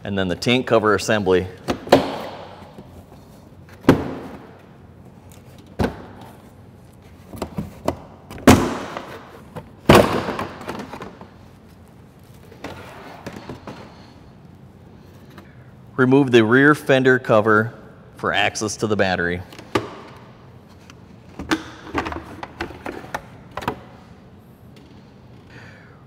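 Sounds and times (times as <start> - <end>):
plastic panels clacking and thudding: 1.6 - 2.9, 7.3 - 11.4, 21.3 - 24.0
soft handling noise: 10.5 - 15.6.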